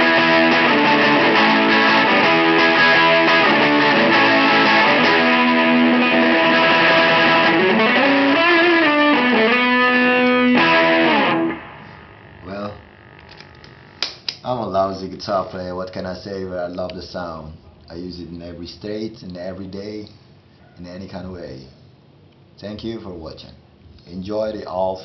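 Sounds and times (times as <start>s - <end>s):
distorted electric guitar: 0.0s - 13.9s.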